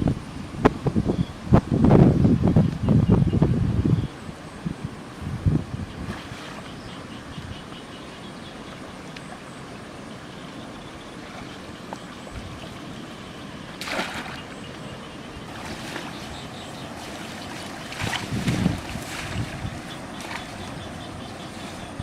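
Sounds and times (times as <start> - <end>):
water trickling and splashing: 5.5 - 22.0
loud water splash: 13.8 - 14.4, 17.0 - 20.5.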